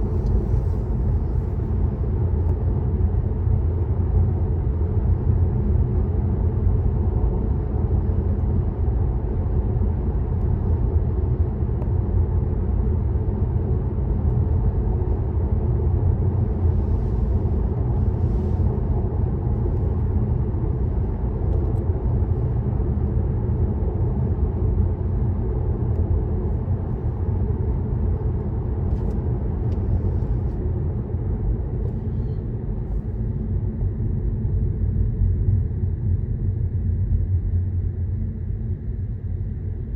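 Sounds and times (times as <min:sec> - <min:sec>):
car road rumble: 0:00.0 - 0:02.6.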